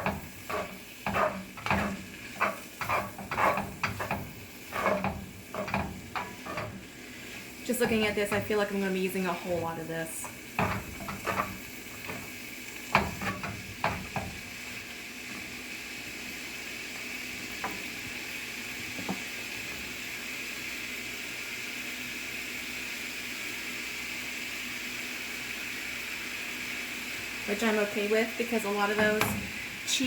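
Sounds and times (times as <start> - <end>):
knocks against a pan: 0.0 - 6.8, 10.6 - 12.3, 12.9 - 14.4, 29.0 - 29.6
meat sizzling in a skillet: 0.0 - 30.0.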